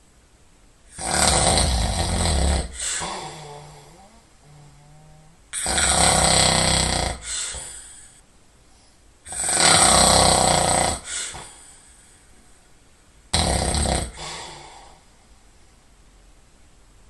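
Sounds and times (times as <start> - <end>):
person snoring heavily: 0.9 - 8.2, 9.3 - 11.8, 13.3 - 15.0
soft breath: 7.2 - 9.2, 11.0 - 12.9, 14.2 - 15.9.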